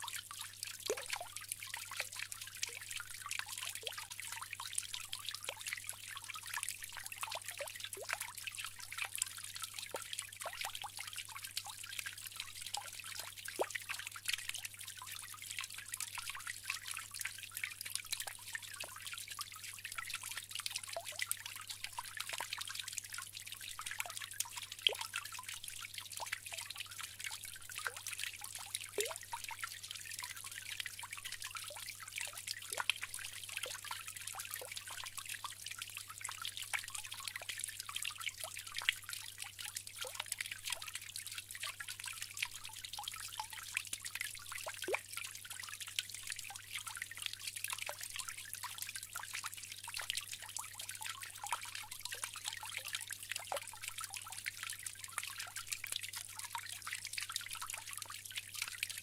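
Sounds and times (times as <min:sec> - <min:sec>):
water drips and plinks: 0:00.0 - 0:59.0
water trickling: 0:00.0 - 0:59.0.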